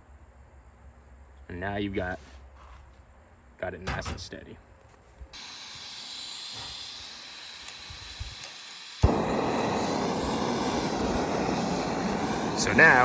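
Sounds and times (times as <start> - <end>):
gas hissing: 5.3 - 13.0
burner lighting pop: 5.4 - 13.0
igniter clicks: 5.4 - 13.0
rushing stove flame: 5.4 - 13.0.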